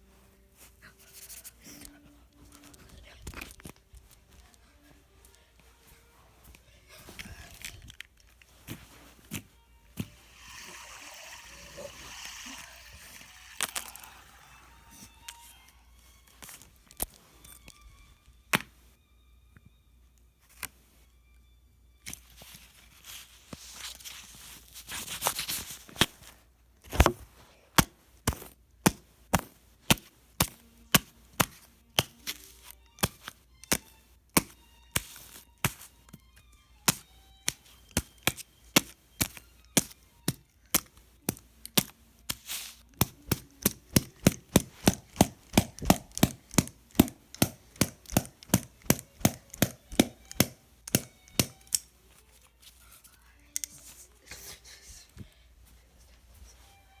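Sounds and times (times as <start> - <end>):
sharp chopping knocks: 43.1 - 51.7.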